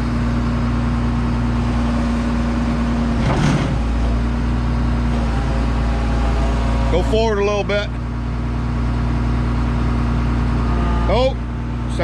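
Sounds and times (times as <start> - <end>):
diesel engine running: 0.0 - 12.0.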